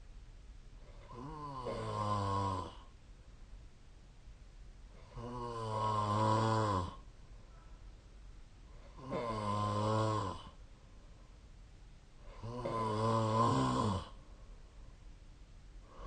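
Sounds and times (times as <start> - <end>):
quiet breathing: 0.7 - 3.5, 4.8 - 16.0
person snoring: 0.9 - 2.9, 5.0 - 7.1, 8.8 - 10.6, 12.2 - 14.2.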